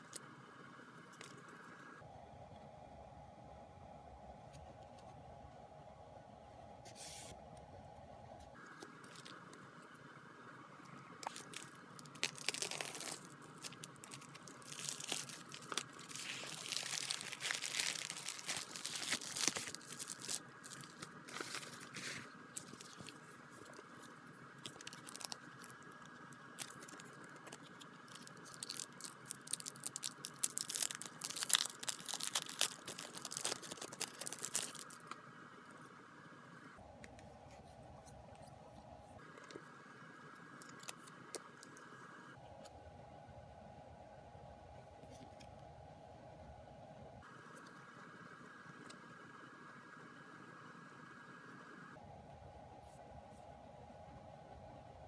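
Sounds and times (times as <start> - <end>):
plastic and paper crinkling: 11.2 - 35.2.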